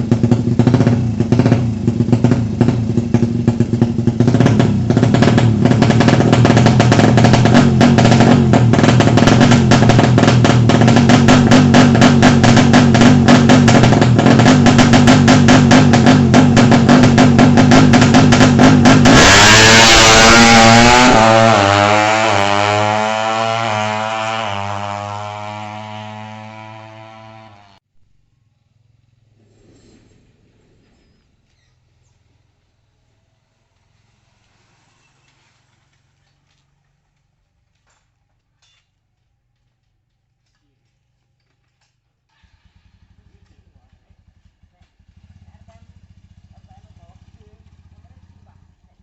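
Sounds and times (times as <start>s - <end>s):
loud burst of noise: 5.1s - 22.5s
music with fast drum beat: 5.4s - 19.6s.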